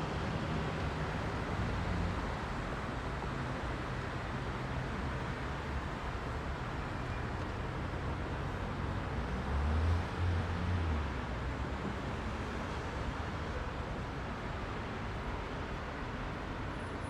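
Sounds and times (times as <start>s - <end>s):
heavy road traffic: 0.0s - 17.0s.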